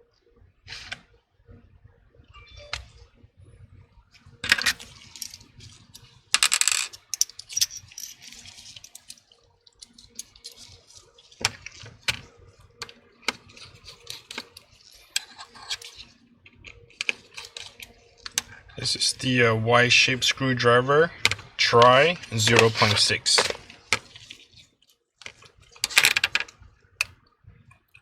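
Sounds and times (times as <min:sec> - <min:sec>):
metal tools clattering: 0:04.4 - 0:09.2.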